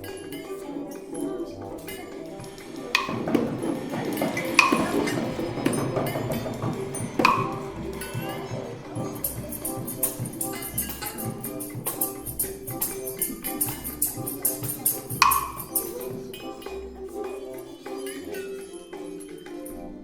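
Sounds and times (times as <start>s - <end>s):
held musical notes: 0.0s - 20.0s
tambourine and light percussion: 1.8s - 16.8s.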